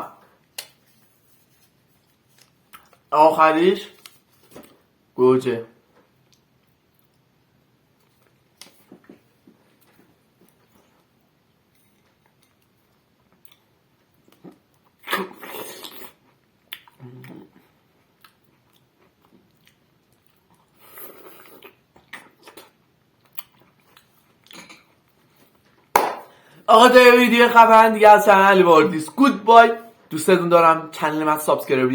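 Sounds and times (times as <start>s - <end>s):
wet chewing and mouth clicks: 11.7s - 25.8s.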